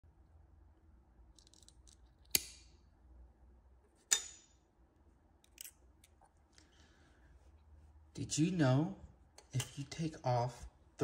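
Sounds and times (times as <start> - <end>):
pliers snipping wire: 2.2 - 2.7.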